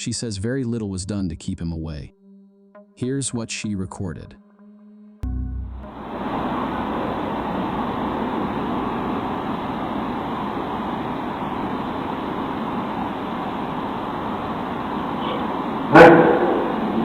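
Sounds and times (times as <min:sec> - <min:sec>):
muffled hiss and rumble: 0:05.3 - 0:17.0.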